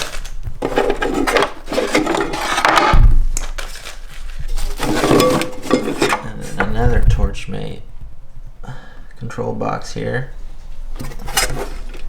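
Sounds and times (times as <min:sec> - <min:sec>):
equipment rubbing and clattering: 0:00.0 - 0:06.9, 0:10.9 - 0:12.0
low thud: 0:02.9 - 0:03.4.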